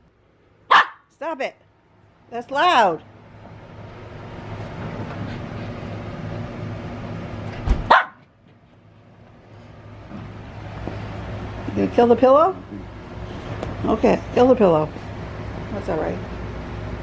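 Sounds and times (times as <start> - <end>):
dog barking: 0.7 - 1.1, 7.9 - 8.2.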